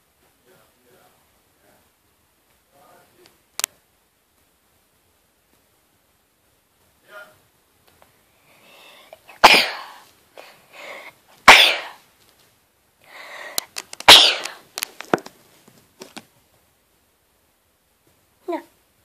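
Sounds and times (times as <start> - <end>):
gasping intake of breath: 8.4 - 9.4, 10.4 - 11.2, 13.0 - 13.8
person sneezing: 9.0 - 12.0, 14.0 - 14.6.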